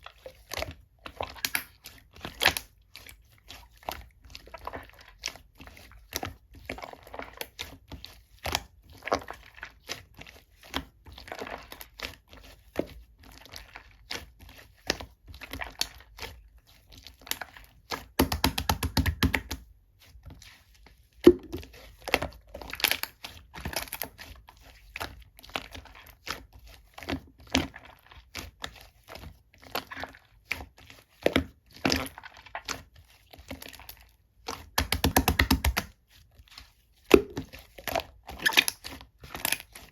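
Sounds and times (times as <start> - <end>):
slime crackling and popping: 34.6 - 35.9.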